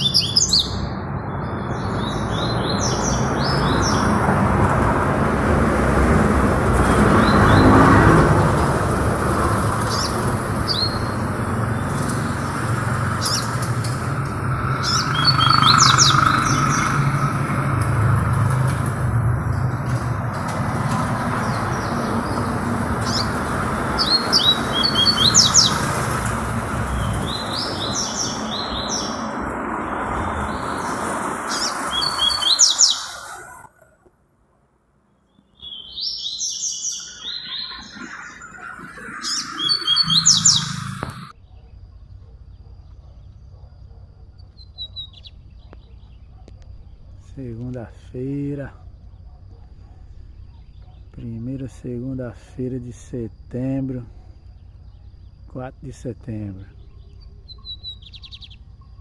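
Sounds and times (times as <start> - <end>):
songbird singing: 0.0 - 34.1, 34.9 - 59.0.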